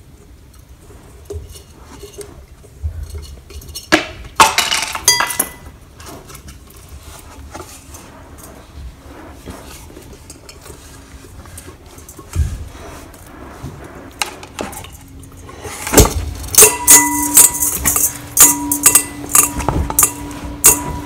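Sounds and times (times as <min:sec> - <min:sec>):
objects knocking: 0:03.8 - 0:05.7.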